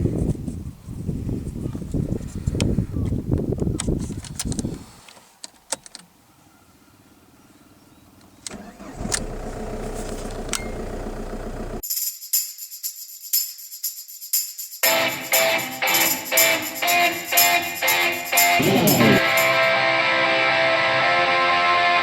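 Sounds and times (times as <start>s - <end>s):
diesel engine running: 8.6s - 11.8s
music with tambourine: 11.8s - 19.8s.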